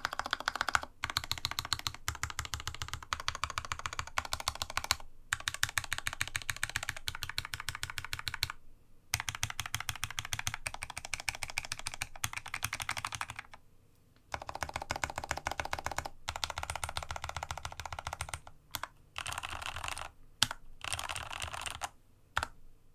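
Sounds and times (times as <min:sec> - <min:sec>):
mechanical keyboard typing: 0:00.0 - 0:13.6, 0:14.3 - 0:22.6.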